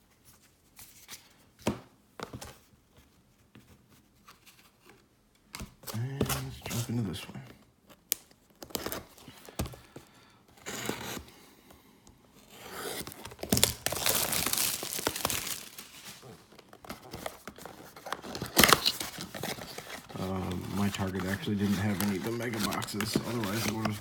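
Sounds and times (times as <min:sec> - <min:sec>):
packaging tearing and crinkling: 0:12.7 - 0:24.0.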